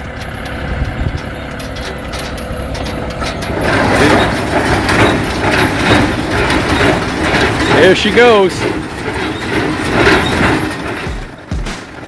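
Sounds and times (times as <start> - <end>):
uneven rushing rattle: 0.0 - 12.0
vehicle engine rumbling: 0.0 - 12.0
knocks: 10.0 - 12.0.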